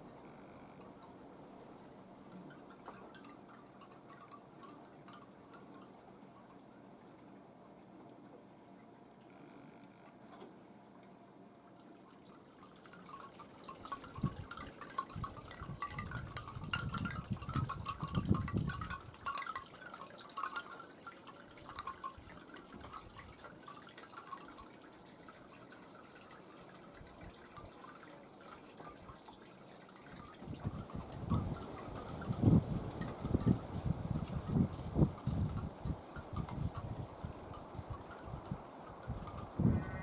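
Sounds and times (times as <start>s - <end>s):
water dripping: 2.0s - 40.0s
wind buffeting microphone: 14.1s - 19.2s, 30.2s - 40.0s.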